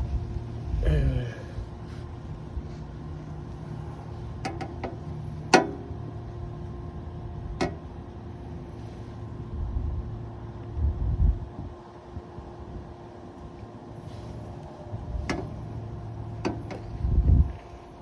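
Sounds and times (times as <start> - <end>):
steady low hum: 0.0 - 18.0
clicks and knocks on generator parts: 4.4 - 5.9, 7.6 - 7.9, 15.2 - 15.6, 16.4 - 17.0.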